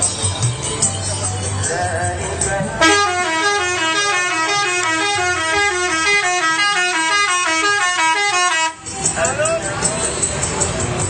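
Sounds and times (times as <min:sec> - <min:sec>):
multi-tone bus horn tune: 0:02.8 - 0:08.9.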